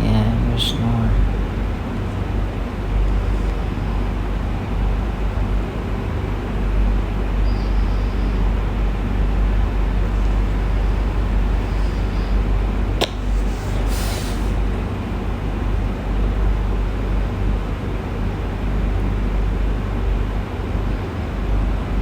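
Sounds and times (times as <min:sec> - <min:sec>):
sharp click: 0:13.0 - 0:13.4
short hiss: 0:13.0 - 0:14.6.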